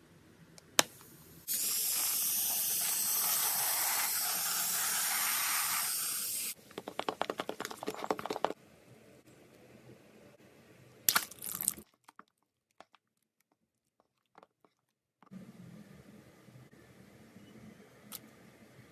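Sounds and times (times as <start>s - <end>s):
loud steady hiss: 0.9s - 6.6s.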